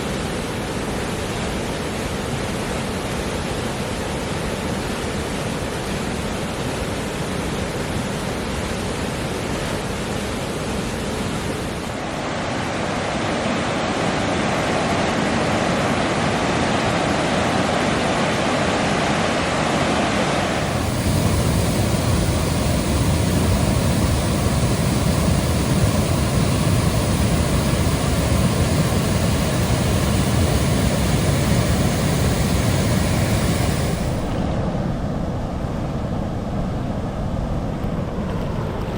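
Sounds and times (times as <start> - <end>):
creek water rushing: 11.7 - 34.8.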